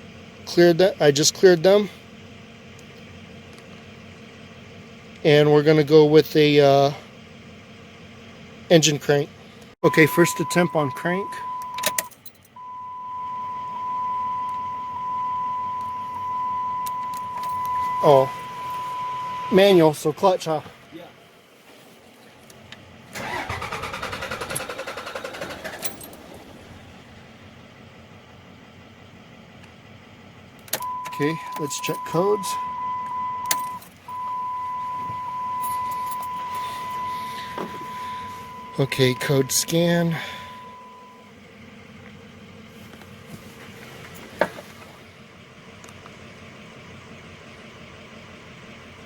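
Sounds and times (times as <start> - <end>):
low background hum: 6.9 - 48.9
diesel engine cranking on starter: 22.4 - 49.0.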